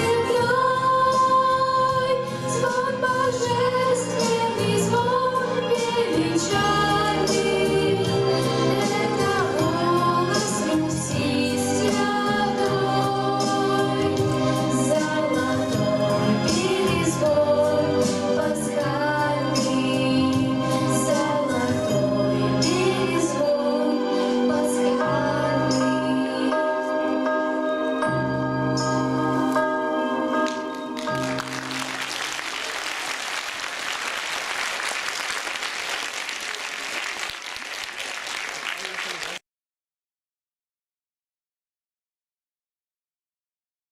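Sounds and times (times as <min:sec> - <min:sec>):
girls singing duet: 0:00.0 - 0:26.6
instrumental backing track: 0:00.0 - 0:32.4
audience applauding: 0:30.5 - 0:39.4.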